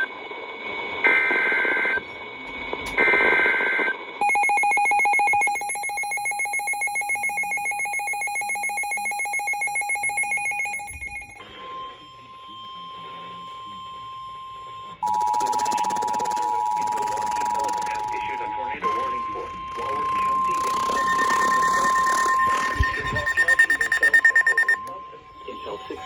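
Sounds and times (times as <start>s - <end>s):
rapidly pulsing alert tone: 4.2s - 11.4s, 15.0s - 26.0s
screechy digital data bursts: 4.2s - 11.4s, 15.0s - 26.0s.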